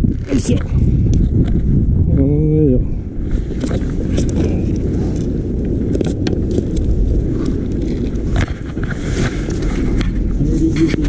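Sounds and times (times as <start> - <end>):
wind buffeting the microphone: 0.0 - 11.0.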